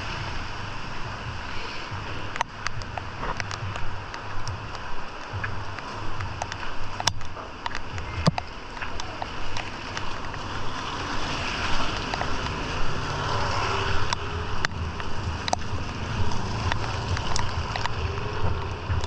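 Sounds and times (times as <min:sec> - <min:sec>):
heavy rain falling: 0:00.0 - 0:19.0
wind rumbling on microphone: 0:00.0 - 0:19.0.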